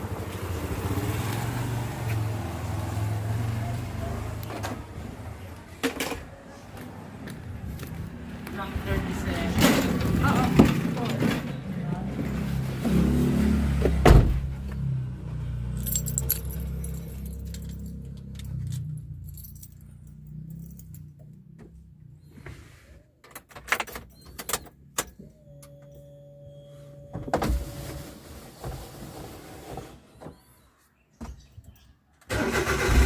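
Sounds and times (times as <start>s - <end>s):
low vehicle hum: 0.0s - 23.2s
keys jangling: 15.8s - 21.3s.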